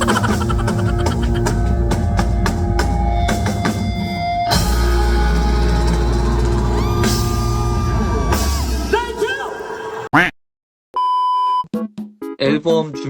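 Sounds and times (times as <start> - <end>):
rock band music: 0.0 - 9.3.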